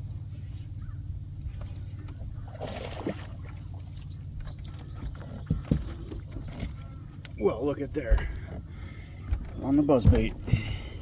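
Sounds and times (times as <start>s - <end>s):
steady low hum: 0.0s - 11.0s
fish splashing at a lure: 2.4s - 5.0s.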